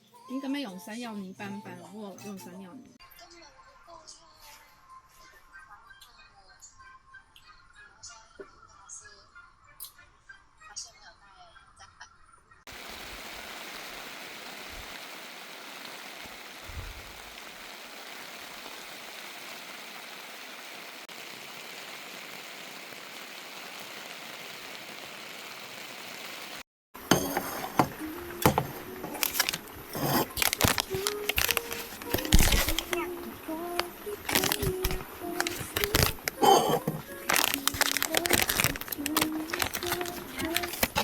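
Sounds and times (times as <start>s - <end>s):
steady rushing hiss: 12.7s - 41.0s
hard objects clinking and knocking: 27.0s - 33.0s, 34.2s - 41.0s.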